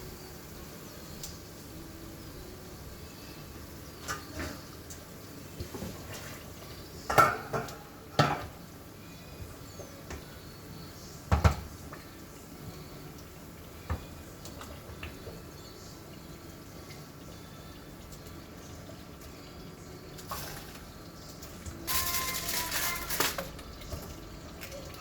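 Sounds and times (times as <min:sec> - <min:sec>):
pots dishes and cutlery clattering: 0:04.0 - 0:08.7, 0:11.3 - 0:12.0, 0:20.2 - 0:25.0.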